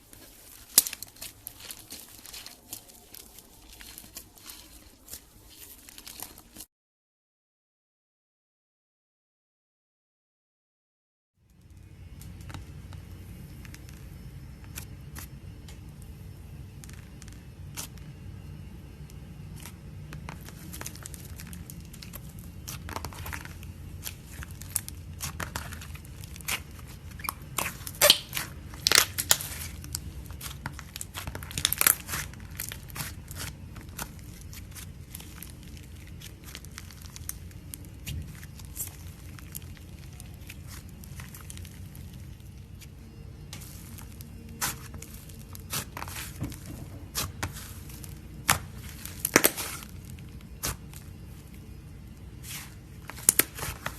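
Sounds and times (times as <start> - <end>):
slime crackling and popping: 0.0 - 6.6, 11.6 - 53.9
faint low hum: 11.5 - 53.9.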